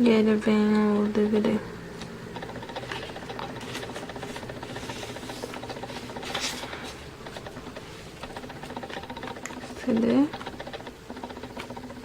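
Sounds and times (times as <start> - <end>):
packaging rustling: 2.8 - 7.5.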